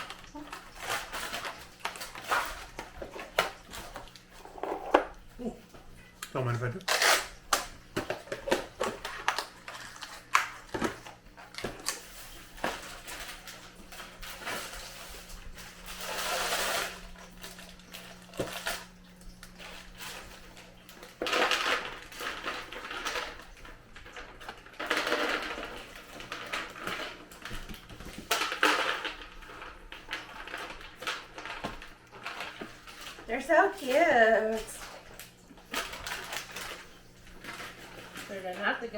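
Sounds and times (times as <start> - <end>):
plastic packaging rustling: 0.0 - 38.9.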